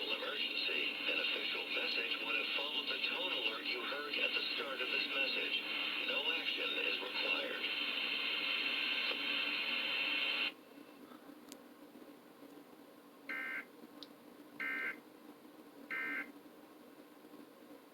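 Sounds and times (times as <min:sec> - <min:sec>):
hissy broadcast sound: 0:00.0 - 0:10.6.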